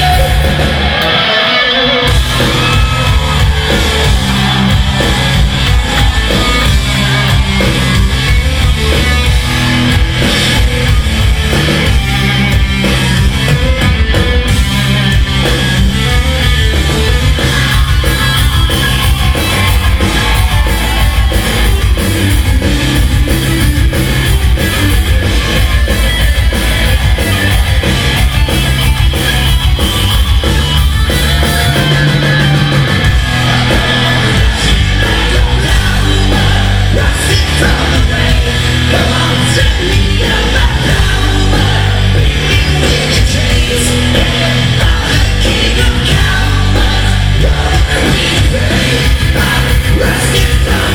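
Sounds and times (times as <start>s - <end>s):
person shouting singing: 0.0s - 8.3s, 33.0s - 50.9s
bass guitar: 0.0s - 50.9s
drums: 0.0s - 50.9s
electric guitars: 0.0s - 50.9s.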